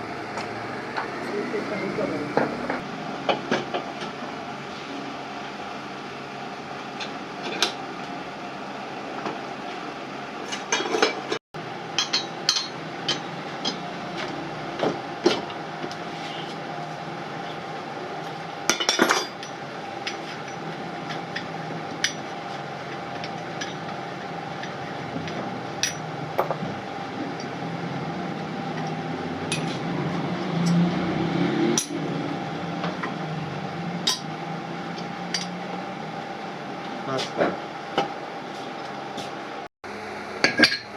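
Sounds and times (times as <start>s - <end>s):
steady background hum: 0.0s - 40.9s
metal tools knocking and clinking: 12.0s - 13.8s, 18.7s - 20.6s.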